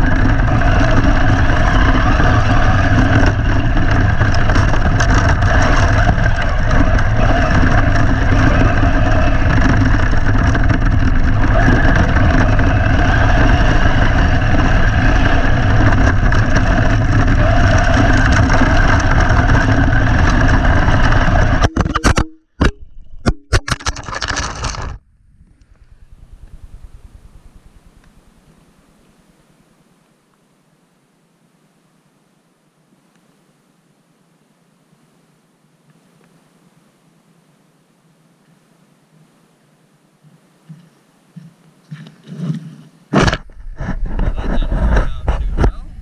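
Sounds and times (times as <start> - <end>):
rc car motor and drivetrain: 0.0 - 21.6
wind rush: 0.0 - 21.7, 24.7 - 28.4, 43.5 - 46.0.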